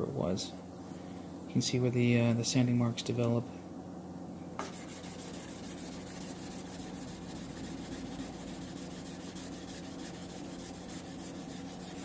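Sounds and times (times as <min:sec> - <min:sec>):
sandpaper rubbing on paint: 0:04.6 - 0:12.0.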